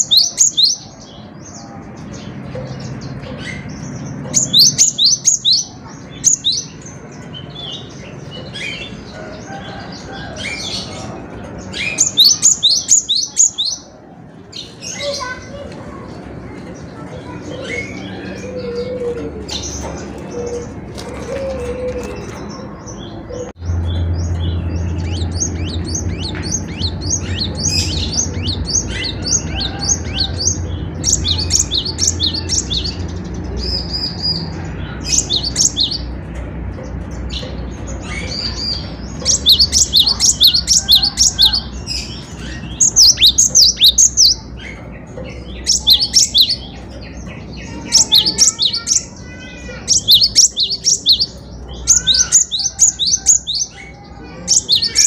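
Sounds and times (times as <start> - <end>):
bird singing high chirping notes: 0.0 - 1.4, 2.3 - 9.0, 38.0 - 49.2.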